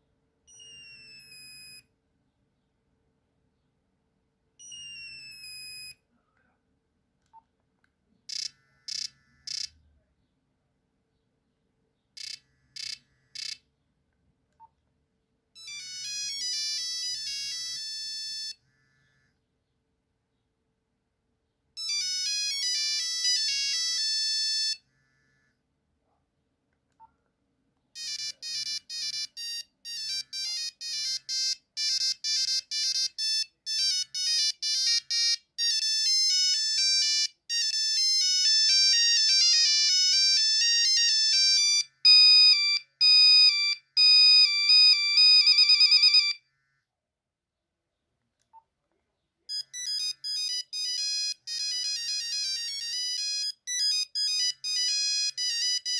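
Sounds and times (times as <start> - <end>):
beeping ringtone melodies: 0.5 - 1.8, 4.6 - 6.0, 8.3 - 9.7, 12.2 - 13.6, 15.6 - 18.6, 21.8 - 24.8, 28.0 - 46.4, 49.5 - 55.9.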